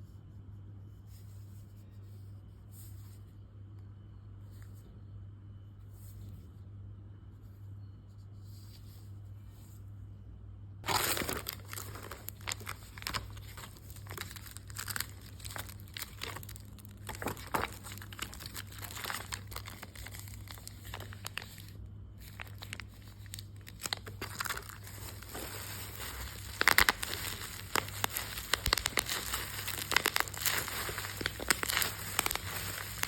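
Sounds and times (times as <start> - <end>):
packaging crinkling: 10.8 - 33.0.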